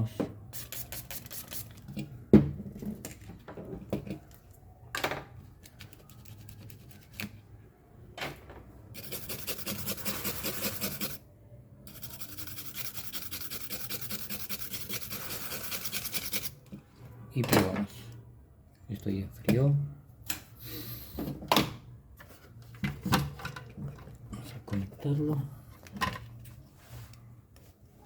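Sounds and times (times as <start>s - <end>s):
brush scrubbing circuit board: 9.0s - 11.2s, 11.9s - 16.6s.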